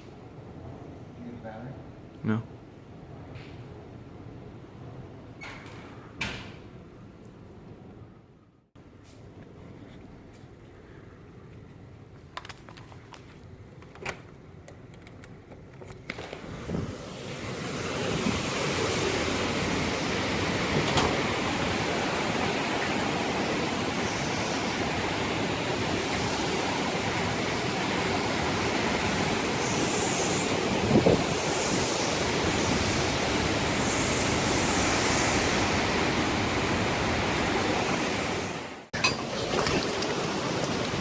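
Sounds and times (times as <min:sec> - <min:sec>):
wind buffeting microphone: 0:16.4 - 0:29.7, 0:30.4 - 0:37.7
wind rushing: 0:16.4 - 0:38.8.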